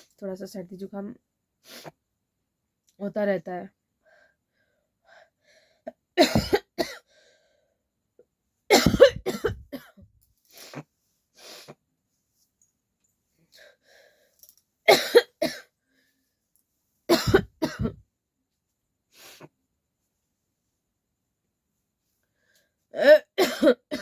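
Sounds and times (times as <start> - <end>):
breaths: 4.0 - 5.9, 7.0 - 7.9, 13.4 - 14.6, 15.8 - 16.4, 22.2 - 22.9
person coughing: 6.2 - 7.1, 8.7 - 10.0, 14.9 - 15.7, 17.1 - 18.0, 23.0 - 24.0.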